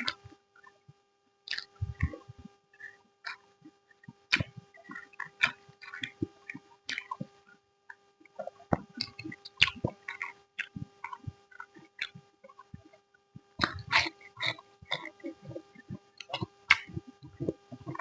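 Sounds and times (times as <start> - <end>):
faint steady hum: 0.0 - 18.0
person chewing with wet smacks: 1.5 - 3.4, 4.3 - 7.3, 8.3 - 13.0, 13.6 - 18.0.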